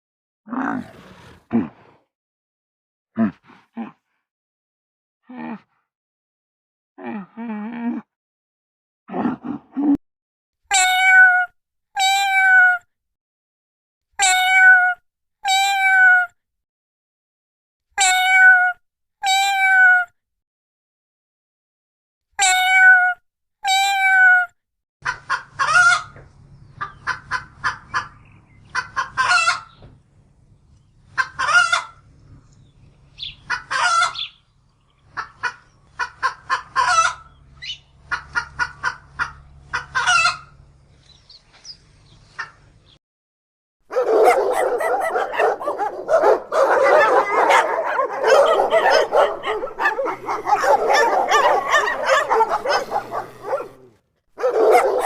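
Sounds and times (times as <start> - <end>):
cat meowing: 10.7 - 12.8, 14.2 - 16.3, 18.0 - 20.1, 22.4 - 24.5, 46.5 - 53.7
hens clucking and cackling: 25.1 - 26.2, 26.8 - 29.7, 31.1 - 32.0, 33.4 - 34.3, 35.2 - 37.3, 38.1 - 40.6, 44.2 - 53.9
dog barking: 43.9 - 55.0
low hum: 44.0 - 53.9.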